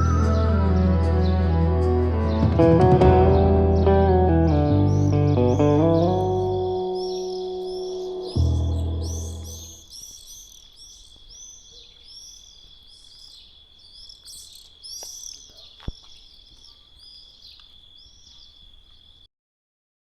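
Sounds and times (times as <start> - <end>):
high thin tone: 0.0 - 2.0
small birds chirping: 3.2 - 19.3.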